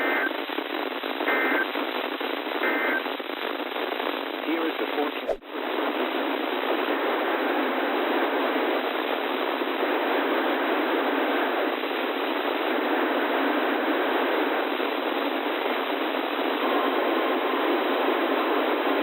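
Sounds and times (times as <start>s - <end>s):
radio static hiss: 0.0s - 6.1s.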